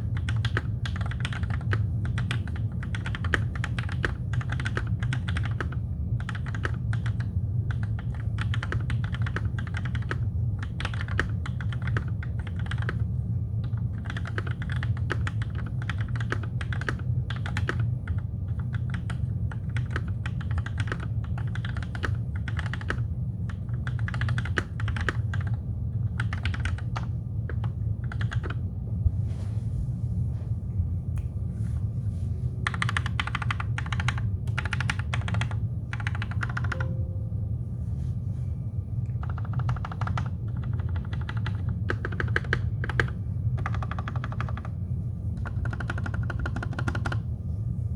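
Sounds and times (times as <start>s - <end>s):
mechanical keyboard typing: 0.2s - 28.6s, 32.6s - 36.9s, 39.2s - 44.7s, 45.4s - 47.2s
low hum: 20.7s - 47.9s.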